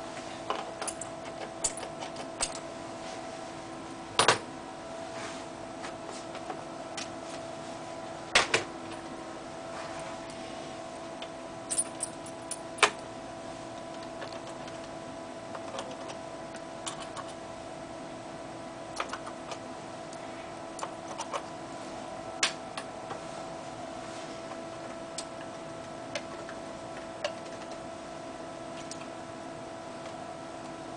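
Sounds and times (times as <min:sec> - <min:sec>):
steady hum: 0:00.0 - 0:30.9.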